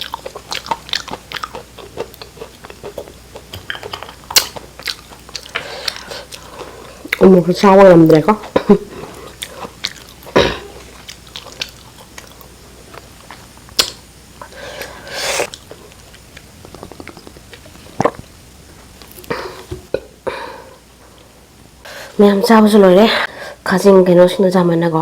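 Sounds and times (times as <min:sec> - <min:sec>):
chewing: 0:00.0 - 0:07.3, 0:08.9 - 0:19.7
mouth clicks and smacks: 0:13.7 - 0:14.0, 0:15.4 - 0:20.0.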